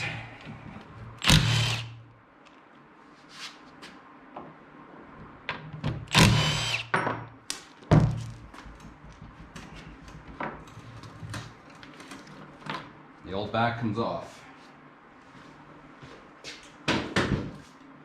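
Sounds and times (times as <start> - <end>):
power driver whining: 1.2 - 2.1, 6.1 - 6.9.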